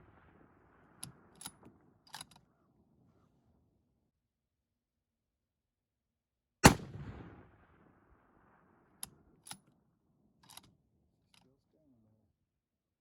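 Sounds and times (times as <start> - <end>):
rifle bolt clicks: 1.0 - 2.4, 10.4 - 10.8
rifle shot echoing: 6.6 - 9.4.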